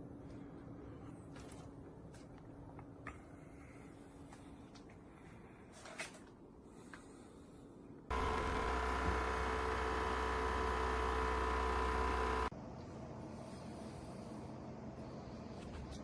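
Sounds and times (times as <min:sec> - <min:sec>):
machine whirring with hum: 0:08.1 - 0:15.7.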